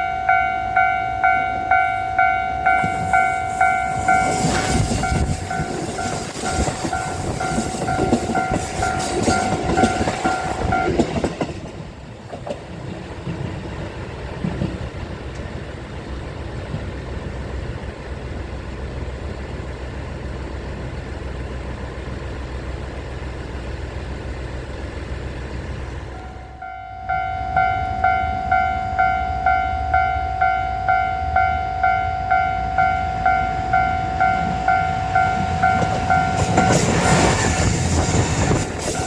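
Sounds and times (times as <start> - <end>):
level-crossing bell ringing: 0.0 - 11.0, 26.2 - 36.9
train wheels clicking over rail joints: 2.8 - 18.1, 33.2 - 39.0.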